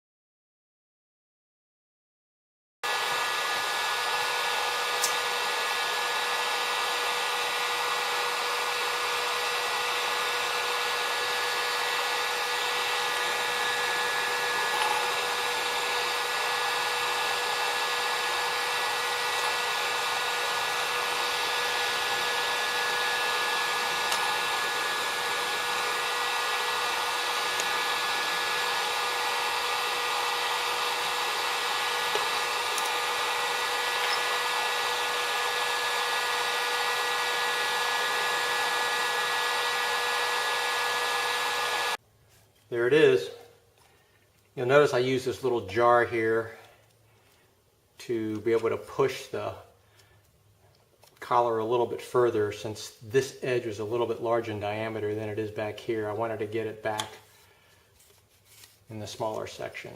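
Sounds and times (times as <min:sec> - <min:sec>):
heat gun fan whine: 0:02.8 - 0:42.0.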